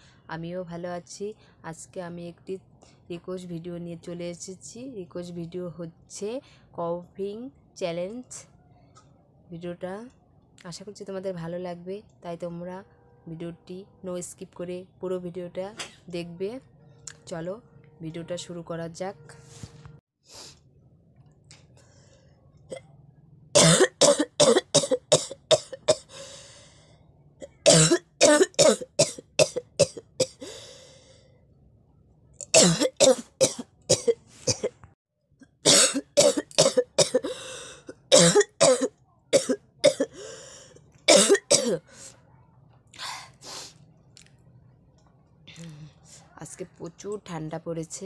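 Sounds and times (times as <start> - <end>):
person coughing harshly: 23.6 - 26.2, 27.6 - 30.5, 32.5 - 34.8, 35.7 - 40.3, 41.1 - 41.8.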